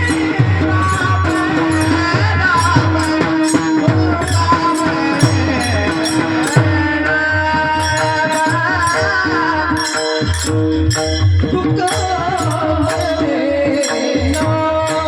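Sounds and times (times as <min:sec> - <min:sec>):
devotional music: 0:00.0 - 0:15.0
drum rhythm: 0:00.0 - 0:15.0
sustained melody tones: 0:00.8 - 0:07.1, 0:07.7 - 0:15.0
high metallic strokes: 0:00.9 - 0:07.0.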